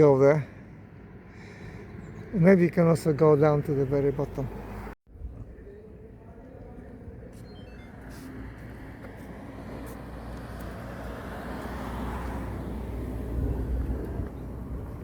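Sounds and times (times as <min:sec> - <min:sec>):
car passing: 0:08.1 - 0:15.0.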